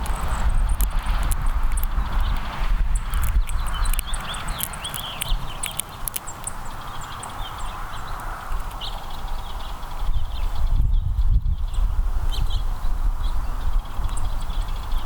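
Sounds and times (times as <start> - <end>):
sharp taps and clicks: 0.0 - 6.6
songbirds chirping: 0.0 - 15.0.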